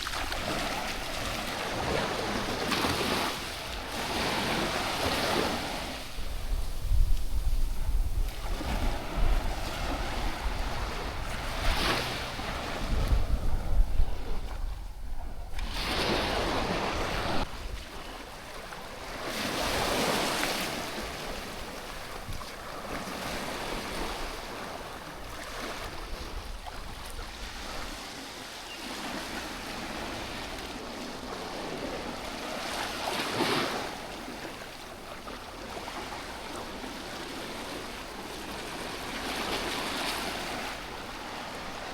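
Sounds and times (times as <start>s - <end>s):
wind buffeting microphone: 0.0s - 18.3s
small waves washing on beach: 0.0s - 41.9s.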